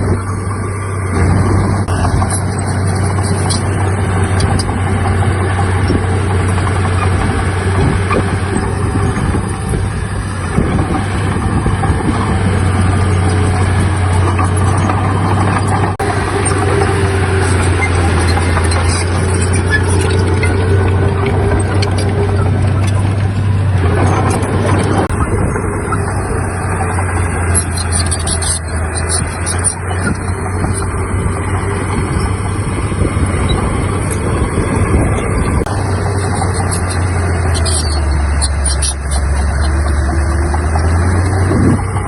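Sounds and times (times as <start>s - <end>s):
heavy diesel engine running: 0.0s - 42.0s.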